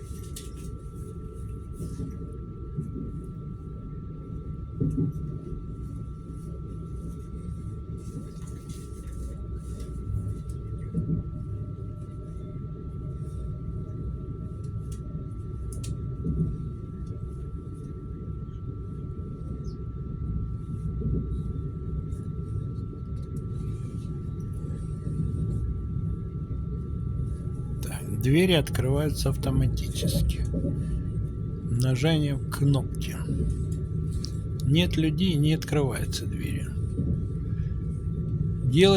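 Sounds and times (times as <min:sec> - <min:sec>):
high whine: 0:27.6 - 0:38.9.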